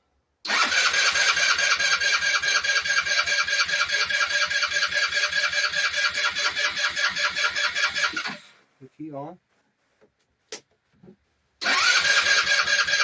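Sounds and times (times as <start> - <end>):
starter cranking scooter engine: 0.5 - 8.4, 11.6 - 13.0.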